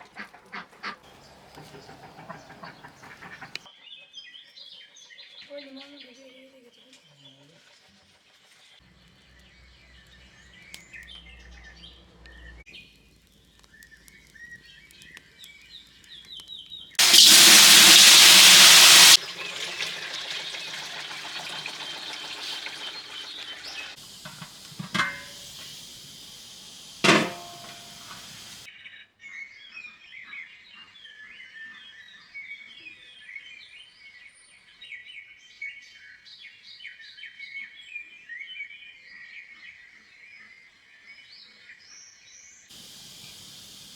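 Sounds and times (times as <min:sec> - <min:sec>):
songbirds chirping and singing: 0:00.1 - 0:07.5
cooking hiss and sizzle: 0:17.0 - 0:28.7, 0:42.7 - 0:43.9.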